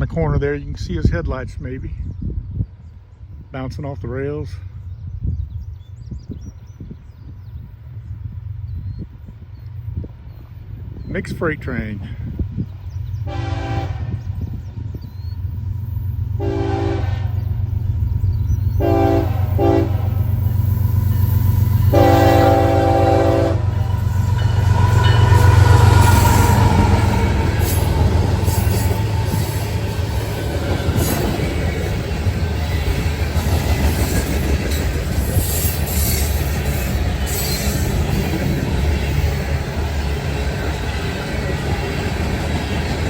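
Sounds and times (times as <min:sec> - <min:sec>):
locomotive air horn blasts: 0:13.3 - 0:14.3, 0:16.4 - 0:17.5, 0:18.8 - 0:20.4, 0:21.8 - 0:26.9.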